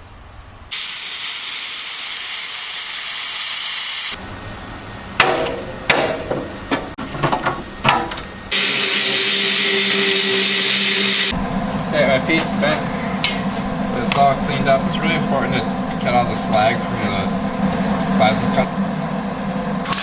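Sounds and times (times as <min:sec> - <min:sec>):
plasma cutter hissing: 0:00.7 - 0:04.2, 0:08.5 - 0:11.3.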